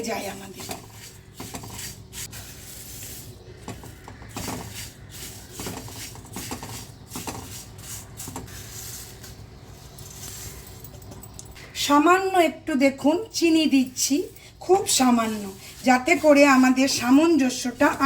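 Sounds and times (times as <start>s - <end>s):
puffed rice rustling and scraping: 0.5s - 10.7s, 14.7s - 18.0s.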